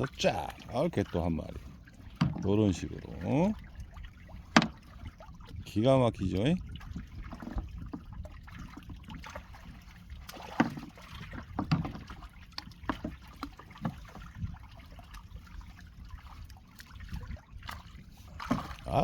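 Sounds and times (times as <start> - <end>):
sea water lapping and splashing: 0.0 - 19.0
wind: 0.0 - 19.0.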